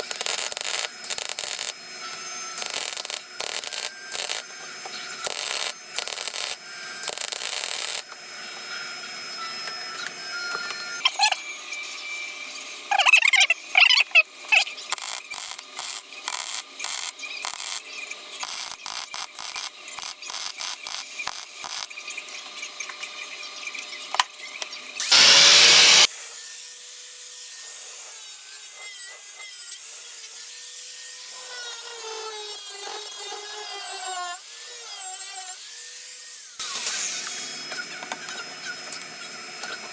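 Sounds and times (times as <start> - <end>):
tack weld bursts: 0.0 - 8.2, 13.0 - 22.0
welder crackling: 0.0 - 8.3, 12.9 - 22.9, 25.0 - 26.1
tool noise with wavering pitch: 0.0 - 26.1, 36.6 - 39.9.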